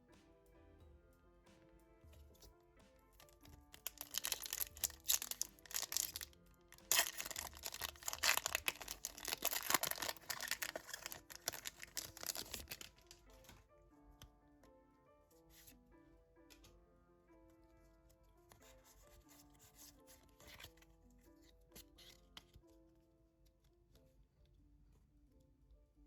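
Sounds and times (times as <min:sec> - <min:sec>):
background music: 0:00.0 - 0:26.0
packaging crinkling and tearing: 0:03.2 - 0:13.3.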